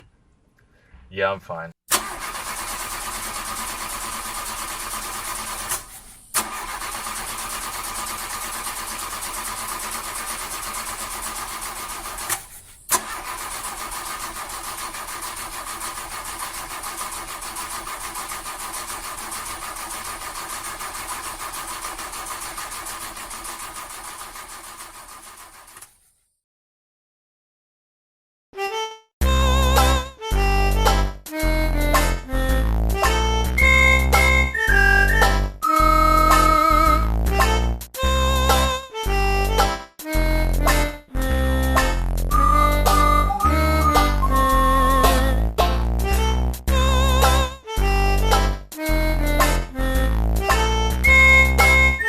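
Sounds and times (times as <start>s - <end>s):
starter motor cranking engine: 1.9s - 26.0s, 51.0s - 52.0s.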